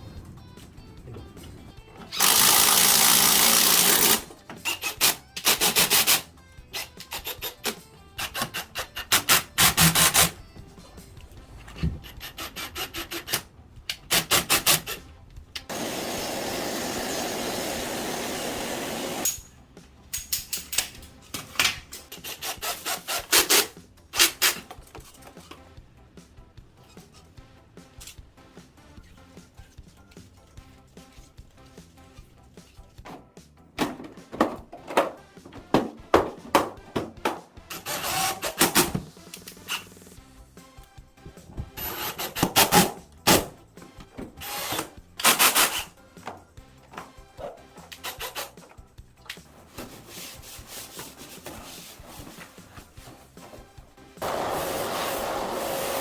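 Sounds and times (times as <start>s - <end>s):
rasping sawing strokes: 11.9s - 13.5s
loud steady hissing: 15.7s - 19.3s.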